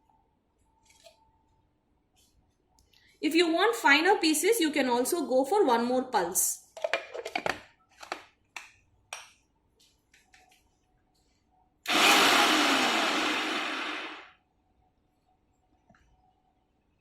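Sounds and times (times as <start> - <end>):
mixer grinder motor whirring: 11.9 - 14.3.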